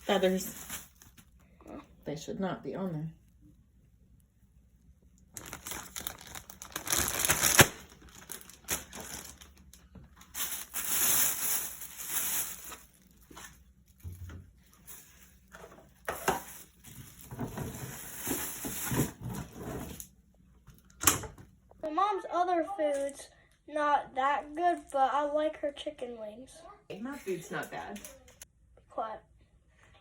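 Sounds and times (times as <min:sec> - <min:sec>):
plastic crinkling and rustling: 0:00.0 - 0:01.8, 0:05.2 - 0:20.1.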